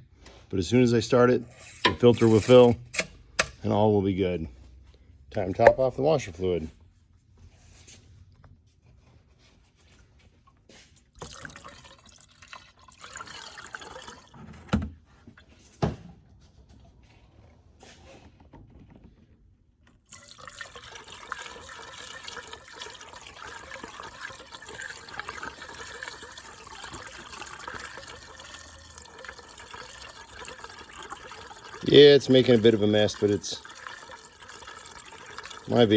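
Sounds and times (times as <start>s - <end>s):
liquid pouring from a jug: 0.3s - 3.2s, 5.4s - 6.2s, 11.0s - 14.7s, 19.9s - 35.9s.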